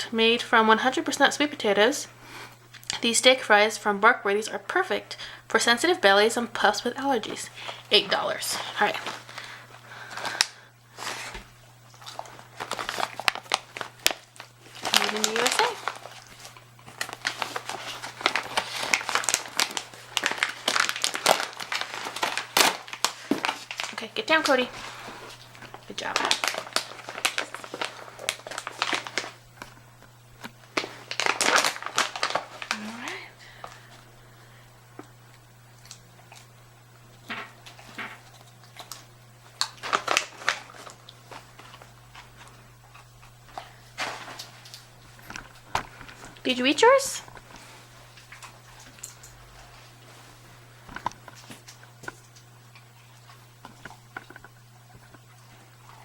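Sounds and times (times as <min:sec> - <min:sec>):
plastic packaging crinkling: 0:06.6 - 0:34.1, 0:37.1 - 0:56.0
dog crunching on a hard chew: 0:08.9 - 0:32.8, 0:35.0 - 0:46.4, 0:47.3 - 0:56.0.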